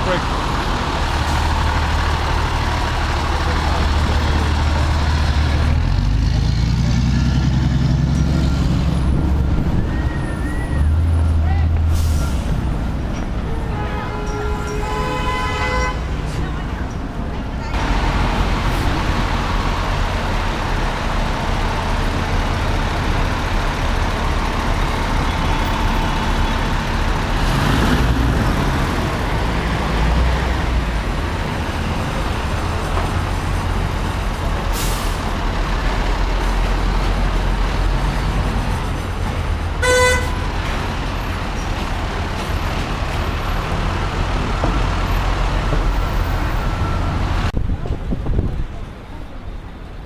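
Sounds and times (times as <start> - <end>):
diesel engine running: 0.0 - 13.5, 16.2 - 47.6
city traffic: 0.0 - 50.0
horn toot: 39.8 - 40.6.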